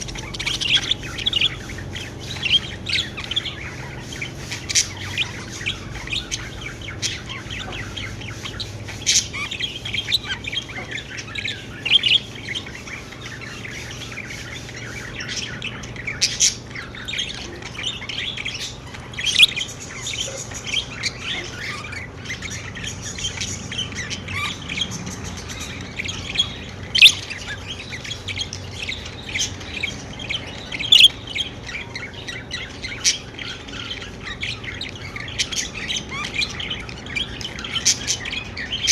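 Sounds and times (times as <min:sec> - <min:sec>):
budgerigars chattering and chirping: 0:00.0 - 0:38.9
sharp bird squawks: 0:30.7 - 0:31.2.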